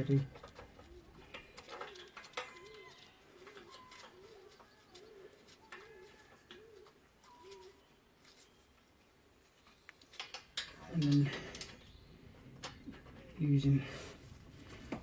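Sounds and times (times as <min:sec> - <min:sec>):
pigeon cooing: 0:00.0 - 0:07.9.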